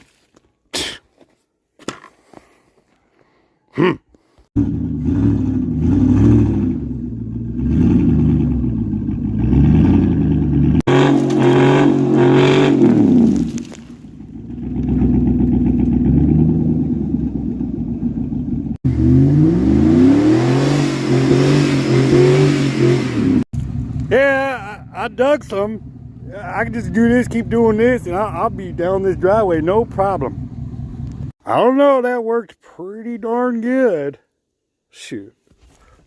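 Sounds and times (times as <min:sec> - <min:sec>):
engine revving under load: 0:04.6 - 0:17.4, 0:18.7 - 0:24.2.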